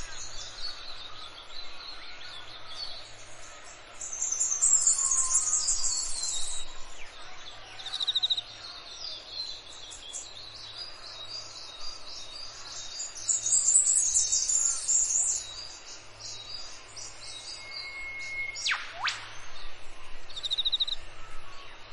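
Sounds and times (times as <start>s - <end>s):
bird trill: 4.1s - 6.7s.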